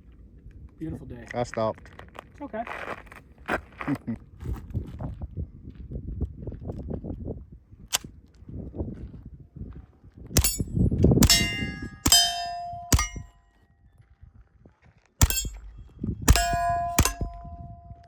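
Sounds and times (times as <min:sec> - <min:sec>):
steel plate ringing: 0:10.4 - 0:13.4, 0:15.2 - 0:18.0
gunshots: 0:11.2 - 0:13.3, 0:15.2 - 0:17.6.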